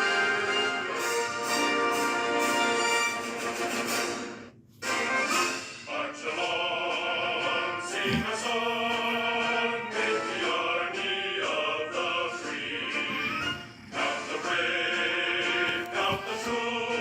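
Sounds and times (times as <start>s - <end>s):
orchestra accompaniment: 0.0s - 5.9s
choir singing long held notes: 5.9s - 17.0s.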